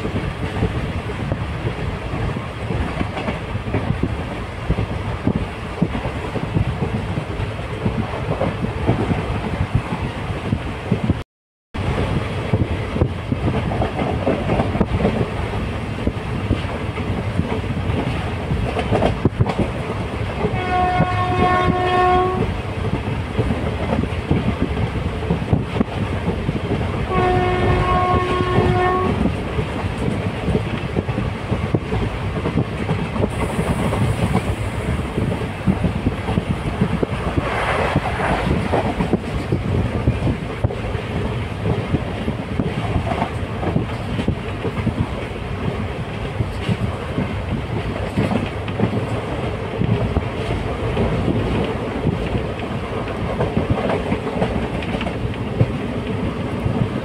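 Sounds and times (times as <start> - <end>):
train rumbling and rattling: 0.0 - 11.2, 11.8 - 57.0
train horn blasts: 20.5 - 22.5, 27.0 - 29.3.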